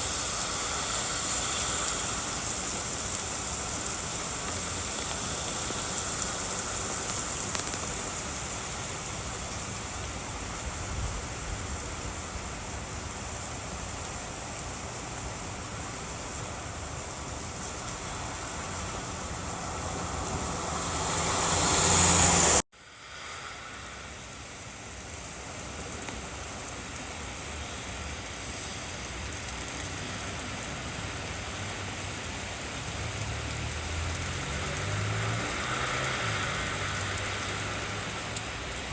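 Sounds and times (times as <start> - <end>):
rain: 0.0 - 38.9
car road and engine noise: 16.2 - 24.4, 30.6 - 38.9.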